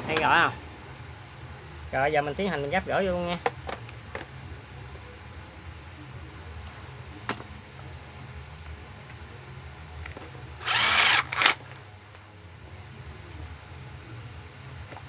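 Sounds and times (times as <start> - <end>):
power drill driving screw: 10.6 - 11.6.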